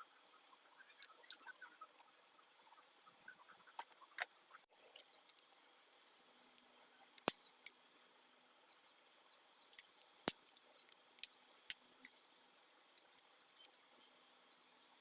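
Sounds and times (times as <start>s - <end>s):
screwdriver and spudger clicking: 9.8s - 10.6s.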